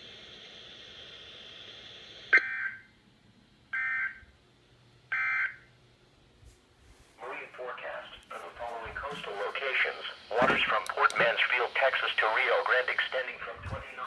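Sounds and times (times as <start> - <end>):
faint radio hiss: 6.0 - 14.0.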